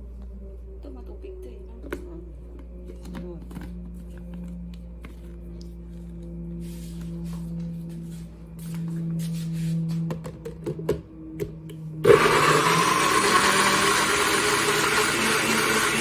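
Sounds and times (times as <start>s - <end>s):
blender motor running: 12.0s - 16.0s.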